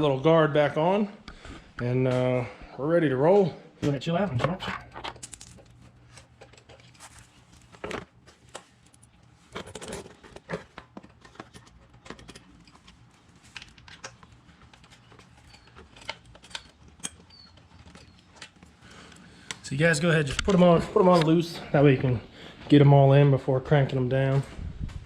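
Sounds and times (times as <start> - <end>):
small parts clicking and tapping: 8.3 - 19.6.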